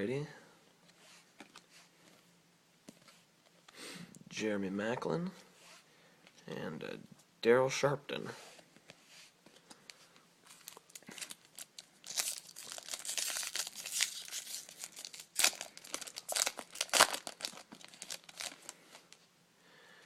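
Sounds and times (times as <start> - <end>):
foil wrapper crinkling and tearing: 10.5 - 19.2.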